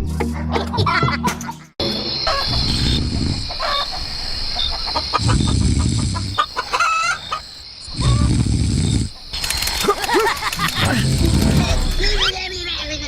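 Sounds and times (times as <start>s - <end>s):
chickens clucking: 2.3s - 7.6s.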